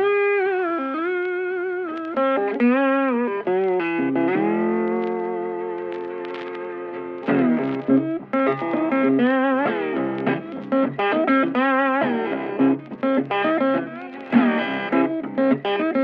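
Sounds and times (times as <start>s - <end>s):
electric guitar melody: 0.0s - 16.0s.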